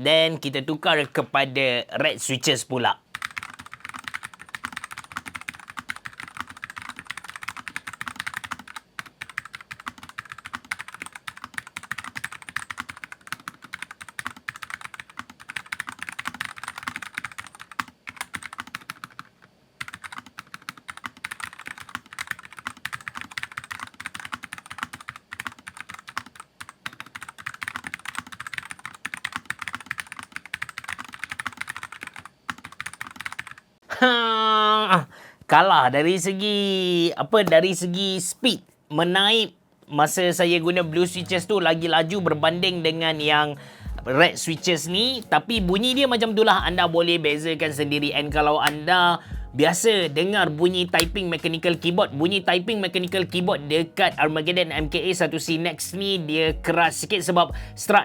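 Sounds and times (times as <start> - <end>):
mechanical keyboard typing: 3.1 - 33.6.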